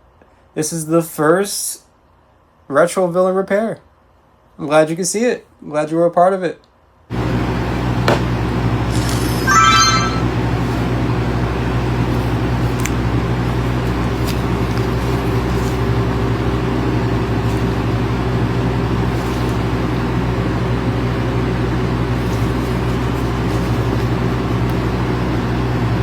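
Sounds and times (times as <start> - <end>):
low mechanical hum: 6.6 - 26.0
short rising chirp: 8.9 - 10.4.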